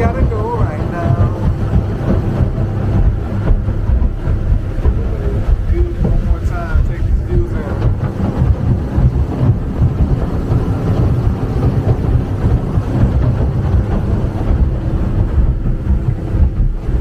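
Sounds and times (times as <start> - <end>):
vehicle engine rumble: 0.0 - 17.0
wind buffeting microphone: 0.0 - 17.0.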